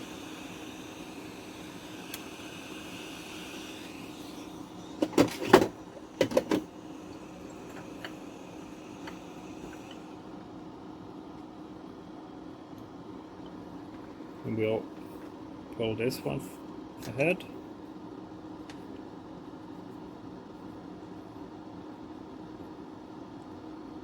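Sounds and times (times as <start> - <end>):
steady hiss: 0.0 - 5.1, 6.4 - 10.2
knocks and rattles on workbench: 5.0 - 6.6.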